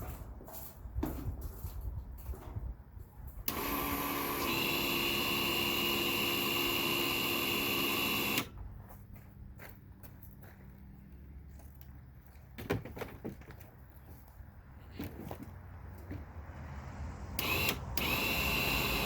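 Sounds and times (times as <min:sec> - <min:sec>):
electric winch motor whining: 0:03.5 - 0:08.5, 0:17.4 - 0:19.0.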